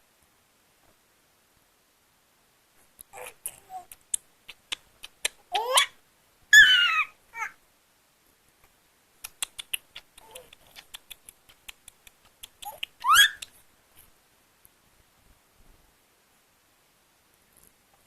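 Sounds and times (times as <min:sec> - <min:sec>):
baby clicking and cooing: 0:03.0 - 0:06.0, 0:09.2 - 0:13.6
baby squealing: 0:05.5 - 0:07.6, 0:12.6 - 0:13.4.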